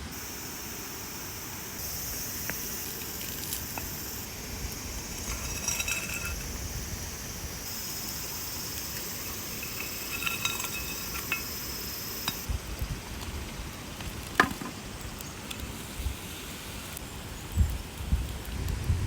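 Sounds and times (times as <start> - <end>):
meat sizzling in a skillet: 0.1 - 18.3
metal clinks: 5.1 - 6.6, 8.9 - 12.5.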